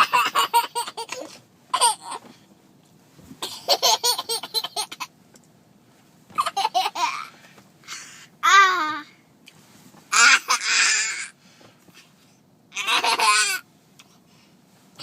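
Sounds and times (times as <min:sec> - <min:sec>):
baby laughing: 0:00.0 - 0:02.2, 0:03.4 - 0:05.1, 0:06.4 - 0:07.3, 0:12.8 - 0:13.6.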